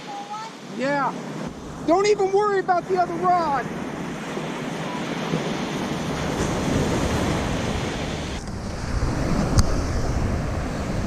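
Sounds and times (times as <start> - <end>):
ocean surf washing ashore: 0.0 - 11.0
wind buffeting microphone: 0.9 - 11.0.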